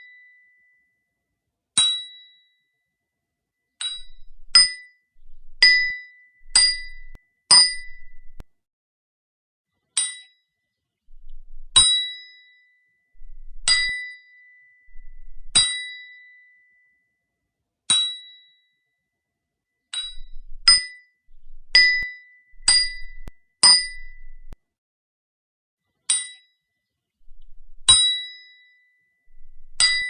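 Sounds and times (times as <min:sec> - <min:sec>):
hammer striking chisel: 0:21.8 - 0:24.6.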